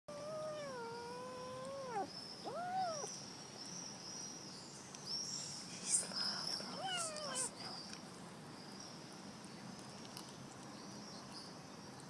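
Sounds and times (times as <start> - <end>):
cat meowing: 0.1 - 3.1, 6.7 - 7.6.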